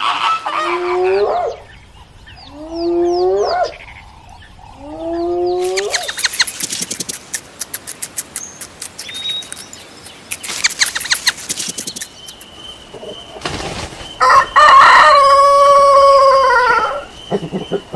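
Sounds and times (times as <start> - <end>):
chickens clucking rapidly: 0.0 - 17.9
rooster crowing: 14.2 - 17.1.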